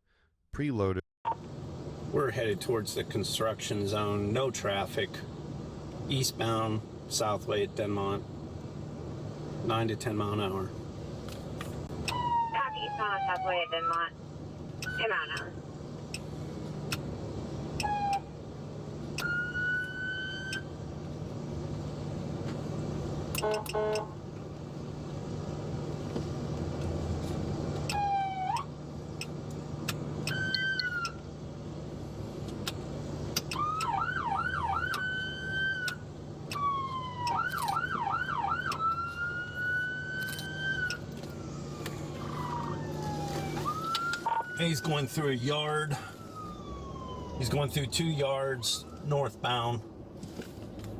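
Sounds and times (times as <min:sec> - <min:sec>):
patrol car low hum: 0:01.3 - 0:50.9
police siren wailing: 0:12.0 - 0:14.1, 0:17.8 - 0:18.4, 0:19.2 - 0:20.7, 0:27.8 - 0:28.8, 0:30.2 - 0:31.3, 0:33.4 - 0:49.8
siren yelp warbling: 0:12.1 - 0:14.1, 0:27.9 - 0:28.7, 0:30.3 - 0:31.2, 0:33.6 - 0:35.9, 0:42.0 - 0:48.0.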